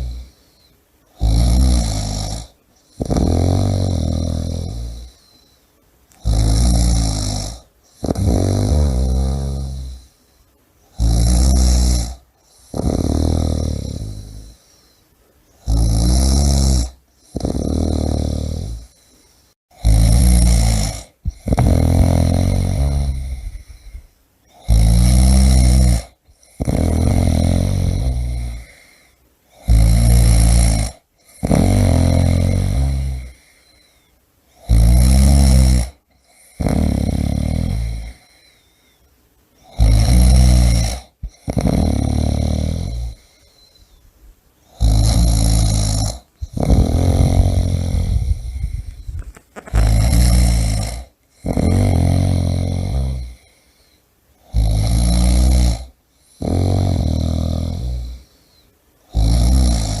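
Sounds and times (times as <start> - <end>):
person snoring loudly: 0.0 - 0.4, 1.1 - 5.3, 6.1 - 10.2, 10.9 - 14.8, 15.6 - 19.1, 19.7 - 33.9, 34.5 - 38.6, 39.6 - 43.8, 44.6 - 53.6, 54.4 - 60.0.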